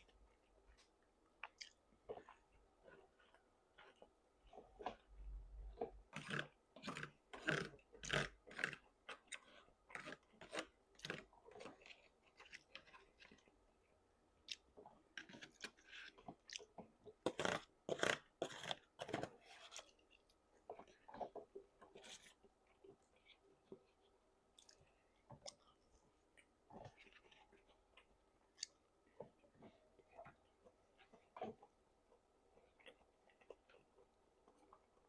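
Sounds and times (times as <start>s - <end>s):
person chewing food crunchily: 1.4s - 13.5s, 14.4s - 21.4s.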